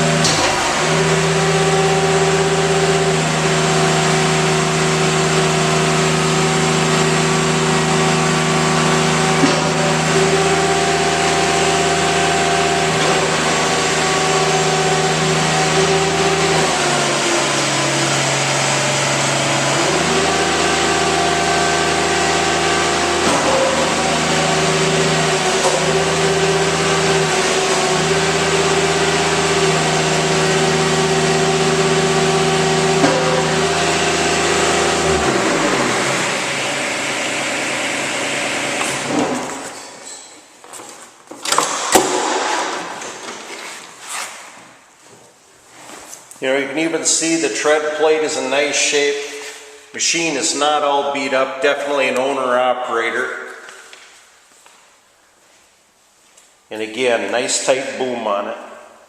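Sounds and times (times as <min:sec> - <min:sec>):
excavator diesel engine running: 0:00.0 - 0:39.2.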